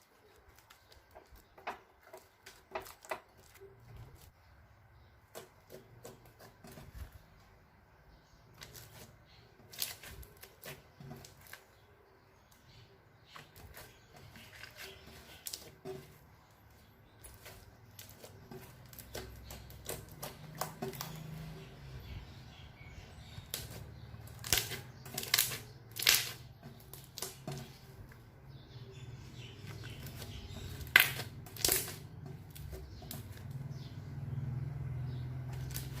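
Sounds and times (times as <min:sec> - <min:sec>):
sticky slime clicks and crackles: 0:23.5 - 0:27.6, 0:30.1 - 0:33.4.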